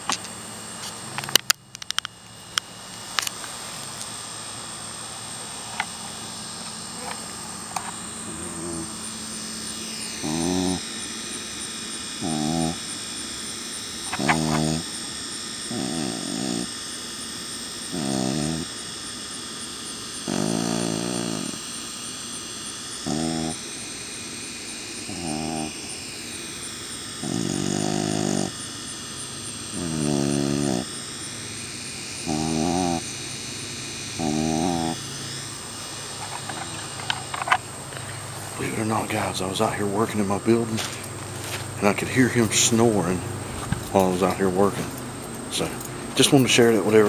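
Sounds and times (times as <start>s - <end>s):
steady high-pitched whine: 0.0s - 47.0s
sharp clicks: 1.2s - 3.4s
dog snoring: 5.3s - 11.4s, 12.0s - 13.0s, 14.0s - 17.0s, 17.8s - 19.0s, 20.1s - 21.8s, 23.0s - 23.7s, 25.0s - 26.0s, 27.2s - 28.7s, 29.7s - 31.0s, 32.2s - 33.1s, 34.1s - 35.0s, 38.0s - 47.0s.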